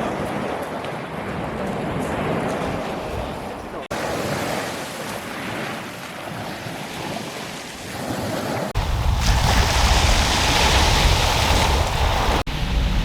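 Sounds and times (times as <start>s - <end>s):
sea waves washing on shore: 0.0s - 13.0s
wave breaking: 0.0s - 13.0s
wind buffeting microphone: 8.7s - 13.0s.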